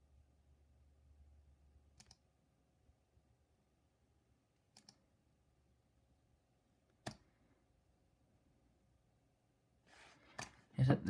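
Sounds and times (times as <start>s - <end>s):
faint room hum: 0.0s - 11.0s
soft computer clicks: 2.0s - 2.2s, 4.7s - 5.0s.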